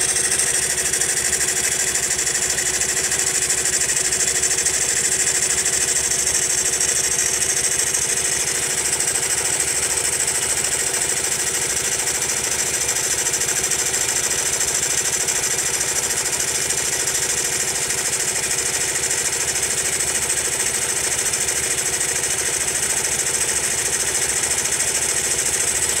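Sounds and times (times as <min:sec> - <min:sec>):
abnormal mechanical engine noise: 0:00.0 - 0:13.0
small motorcycle engine idling: 0:00.0 - 0:26.0.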